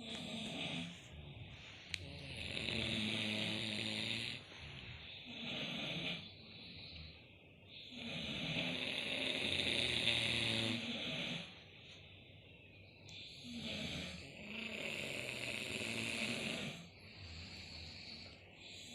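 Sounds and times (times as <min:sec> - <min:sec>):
people snoring: 0:00.0 - 0:11.6, 0:13.1 - 0:18.9.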